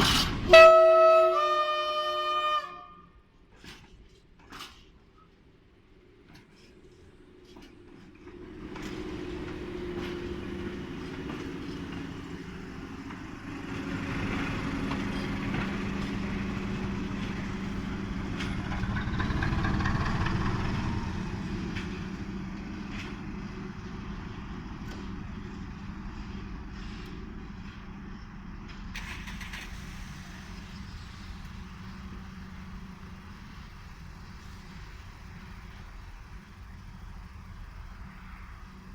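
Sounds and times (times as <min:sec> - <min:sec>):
diesel locomotive engine running: 0:00.0 - 0:04.5, 0:05.5 - 0:38.9.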